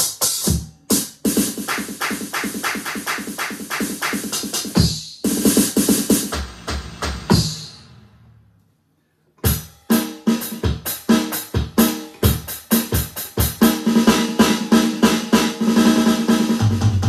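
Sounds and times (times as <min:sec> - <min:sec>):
electronic drum pattern: 0:00.0 - 0:08.0, 0:09.4 - 0:17.0.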